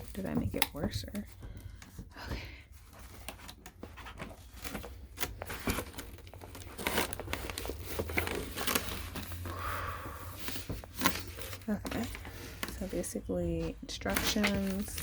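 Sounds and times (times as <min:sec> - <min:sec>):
packaging crinkling and tearing: 0:03.0 - 0:13.1, 0:14.0 - 0:15.0.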